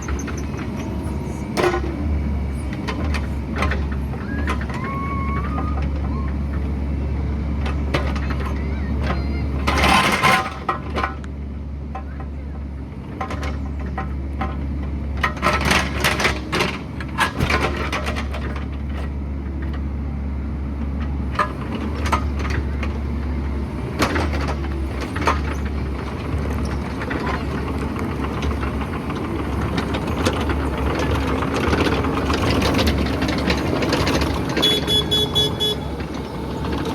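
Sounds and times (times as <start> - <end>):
excavator engine running: 0.0 - 36.9
brief high tone: 34.6 - 36.0.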